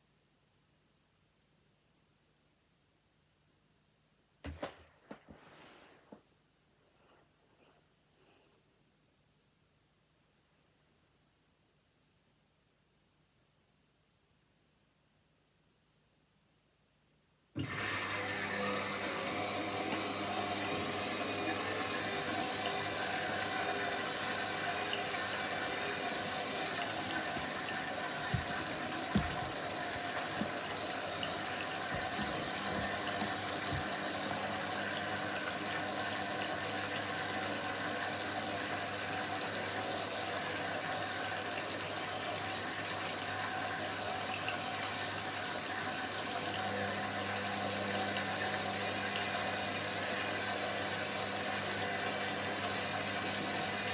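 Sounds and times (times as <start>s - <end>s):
washing machine motor hum: 17.6s - 53.9s
rushing water: 20.1s - 37.3s.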